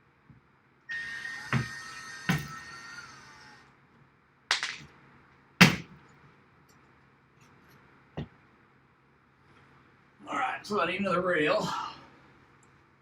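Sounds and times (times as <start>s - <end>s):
drill motor whine: 0.9s - 3.7s
hard parts knocking down: 4.5s - 4.9s, 5.6s - 5.9s.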